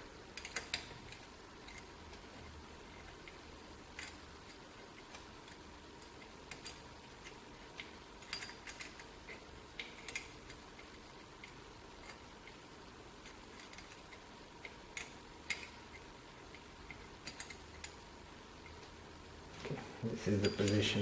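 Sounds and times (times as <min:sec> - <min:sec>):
faint steady hum: 0:00.0 - 0:21.0
hand tool clicking on metal parts: 0:04.0 - 0:12.6.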